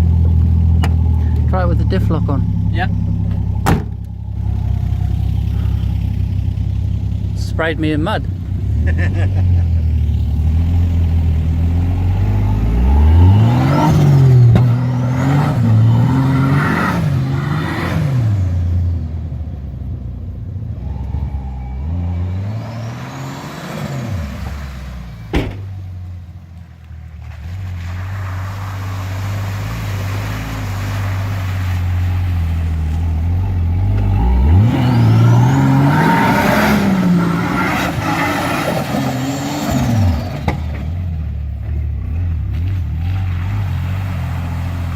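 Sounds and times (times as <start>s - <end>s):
car engine revving: 0.0s - 26.4s, 27.4s - 44.9s.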